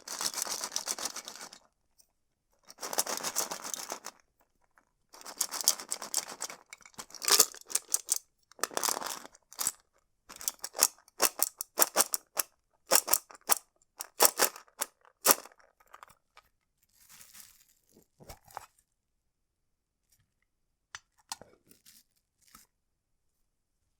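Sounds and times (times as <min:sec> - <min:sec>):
scratching on metal tin: 0:02.7 - 0:04.1, 0:05.2 - 0:09.7.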